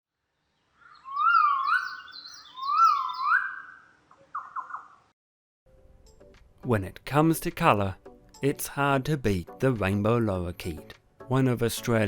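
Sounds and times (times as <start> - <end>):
bird whistling: 0.8 - 5.0.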